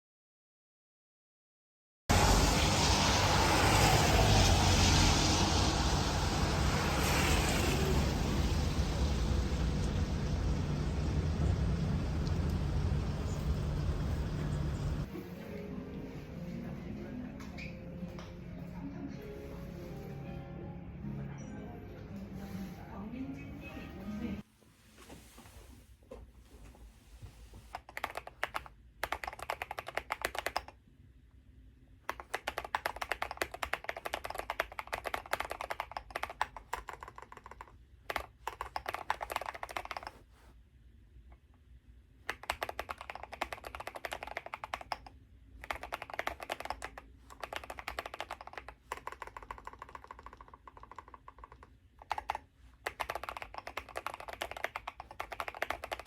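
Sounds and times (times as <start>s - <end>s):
fast typing on mechanical keyboard: 27.7s - 30.8s, 32.1s - 40.2s, 42.3s - 56.0s.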